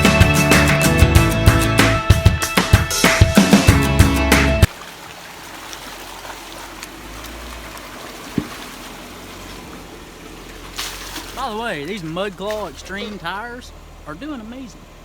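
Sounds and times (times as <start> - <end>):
water trickling: 4.7 - 15.0.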